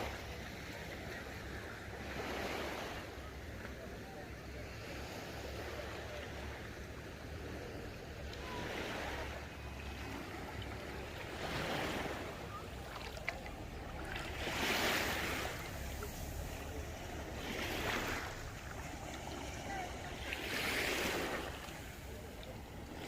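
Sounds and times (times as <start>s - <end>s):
sea waves washing on shore: 0.0s - 23.0s.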